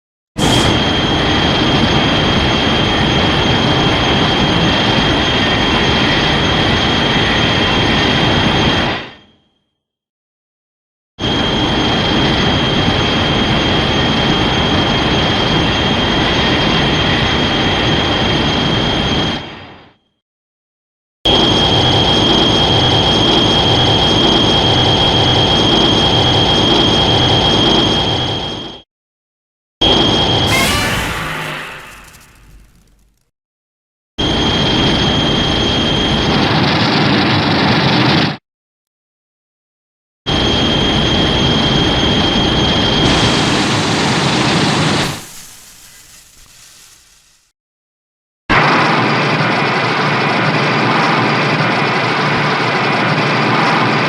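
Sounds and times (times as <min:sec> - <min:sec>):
rushing screech with high whine: 0:00.4 - 0:03.3, 0:30.2 - 0:33.2, 0:42.8 - 0:47.5
monster roar with high whine: 0:30.5 - 0:32.8.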